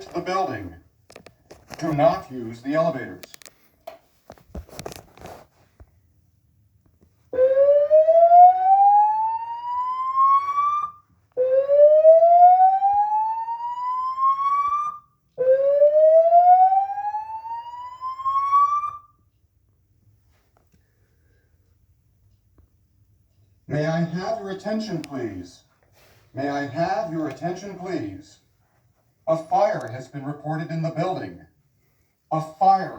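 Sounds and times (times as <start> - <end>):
rising whoop alarm tones: 7.4 - 19.1.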